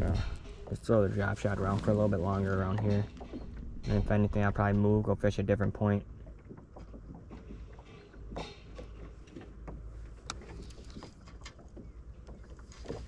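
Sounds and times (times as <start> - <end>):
steady low rumble: 0.0 - 6.3
clicks and knocks of fishing gear: 6.2 - 13.0.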